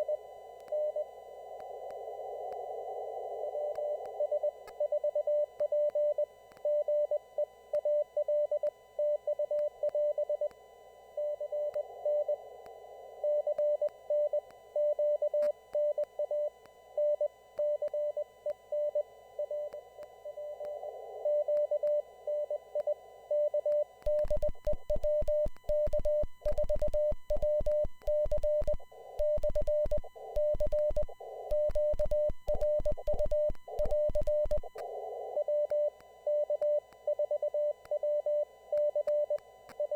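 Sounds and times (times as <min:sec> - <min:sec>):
morse code tone: 0:24.1 - 0:34.8
radio hiss: 0:28.7 - 0:35.7.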